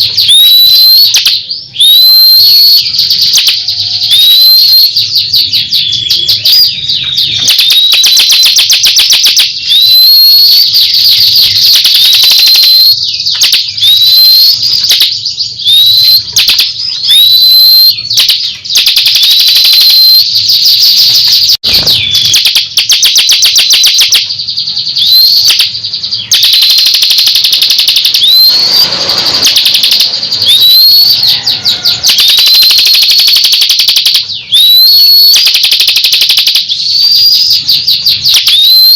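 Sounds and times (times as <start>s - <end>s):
bird singing fast trills: 0.0s - 38.9s
short upslurred whistle: 1.8s - 2.8s, 9.7s - 11.2s, 17.1s - 18.0s.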